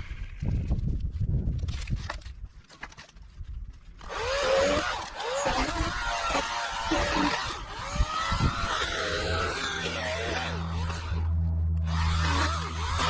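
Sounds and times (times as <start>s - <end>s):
electric chainsaw cutting wood: 4.0s - 13.0s.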